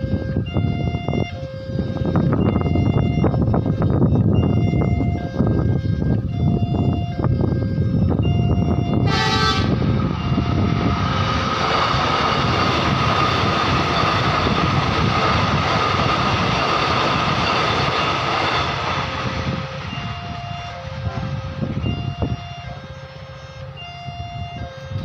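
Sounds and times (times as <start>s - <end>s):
train horn: 0.0s - 10.9s, 17.3s - 25.0s
crossing warning siren: 0.0s - 25.0s
steady whine: 0.0s - 25.0s
train wheels rushing on rails: 2.0s - 25.0s.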